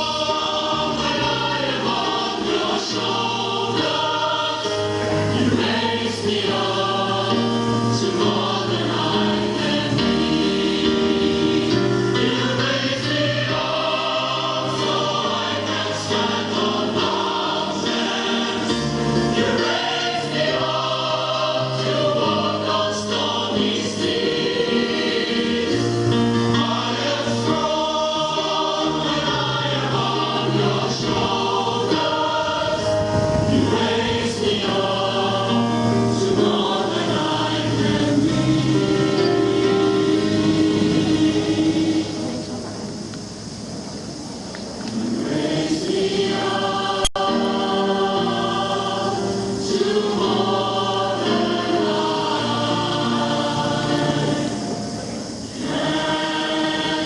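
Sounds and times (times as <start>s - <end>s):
choir singing sacred music: 0.0s - 57.0s.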